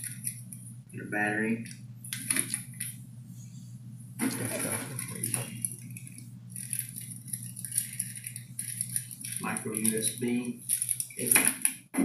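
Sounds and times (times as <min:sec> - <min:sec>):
small accessories rattling: 0:00.0 - 0:00.6, 0:02.1 - 0:03.0, 0:04.2 - 0:11.9
packaging rustling: 0:04.2 - 0:11.7.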